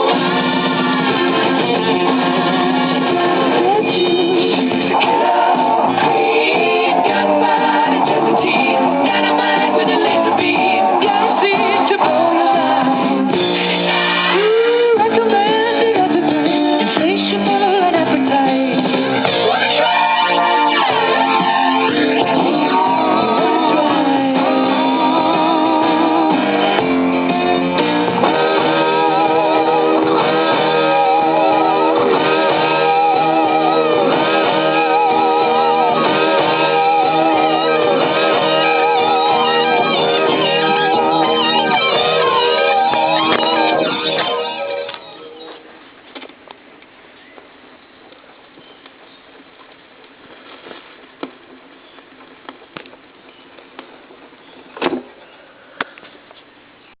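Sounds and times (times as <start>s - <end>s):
rock music with electric guitars: 0.0s - 45.7s
record player hiss: 0.0s - 57.0s
vinyl clicks and pops: 40.6s - 56.5s.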